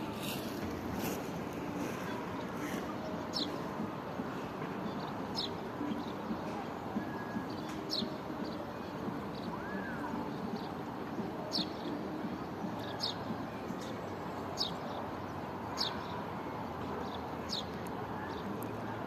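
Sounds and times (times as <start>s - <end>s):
steady rushing noise: 0.0s - 13.8s.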